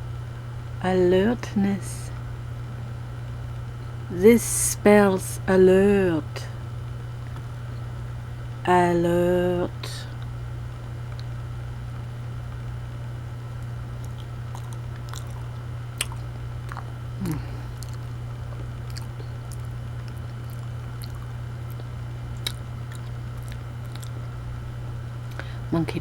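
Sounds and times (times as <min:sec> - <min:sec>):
steady low hum: 0:00.0 - 0:26.0
person chewing wetly: 0:14.0 - 0:24.3.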